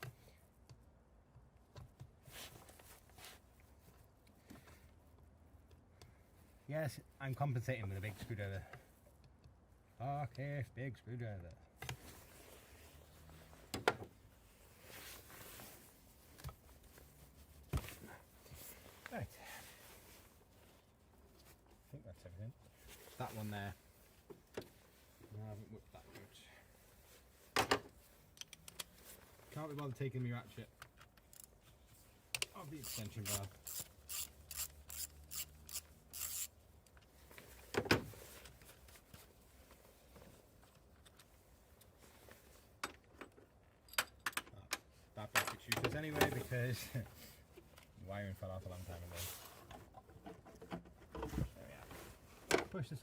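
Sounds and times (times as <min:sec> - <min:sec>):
handling and rustling: 0:01.6 - 0:05.6, 0:11.7 - 0:35.0, 0:35.8 - 0:53.0
socket ratchet rasping: 0:31.2 - 0:31.6, 0:32.4 - 0:36.6.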